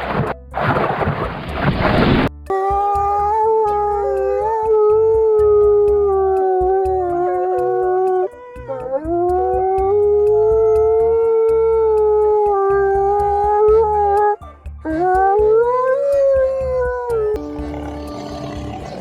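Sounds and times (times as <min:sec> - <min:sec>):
animal howling: 0:02.5 - 0:19.0.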